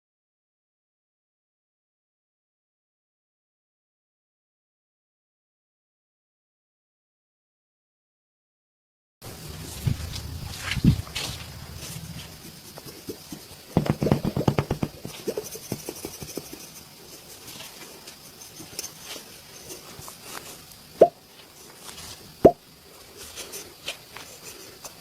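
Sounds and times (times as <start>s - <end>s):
sharp pops: 13.7s - 16.5s
rapid hand slaps on skin: 13.8s - 15.1s.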